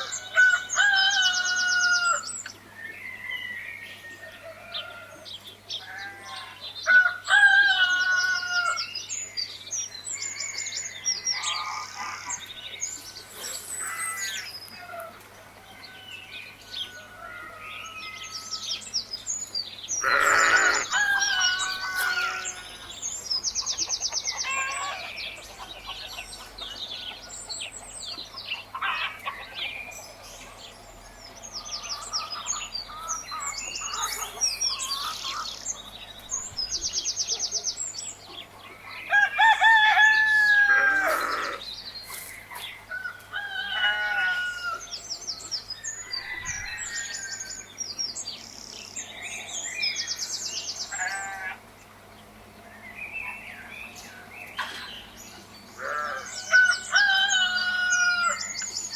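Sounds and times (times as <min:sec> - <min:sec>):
rooster crowing: 0:00.0 - 0:02.3, 0:06.0 - 0:08.9, 0:20.0 - 0:22.9, 0:39.1 - 0:41.6, 0:42.9 - 0:45.1, 0:45.8 - 0:47.7, 0:55.8 - 0:58.6
small birds chirping: 0:08.0 - 0:39.7, 0:40.4 - 0:43.1.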